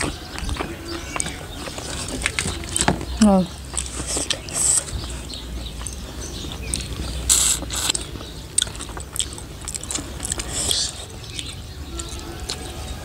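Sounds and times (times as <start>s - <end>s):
chewing and smacking: 0.0s - 12.7s
mouth clicks: 3.7s - 12.7s
wet mouth bursts: 7.3s - 8.0s.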